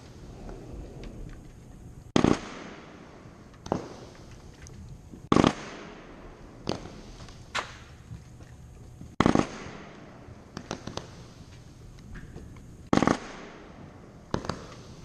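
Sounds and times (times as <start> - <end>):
firework booms with echo: 2.1 - 4.2, 5.2 - 7.9, 9.2 - 11.4, 12.9 - 15.0
firework pops: 3.6 - 4.3, 5.2 - 6.0, 9.1 - 11.6, 12.9 - 15.0.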